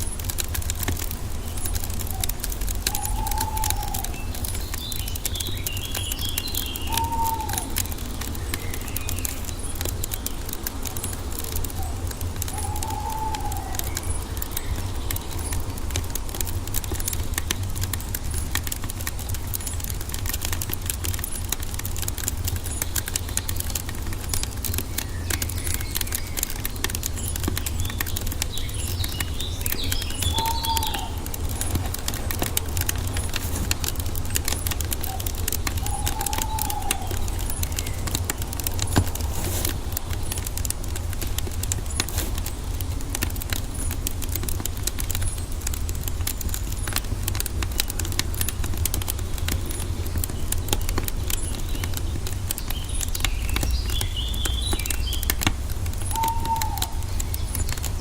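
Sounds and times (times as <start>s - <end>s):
wood fire crackling: 0.0s - 58.0s
bird calling: 1.3s - 17.3s, 22.7s - 42.6s, 49.7s - 58.0s.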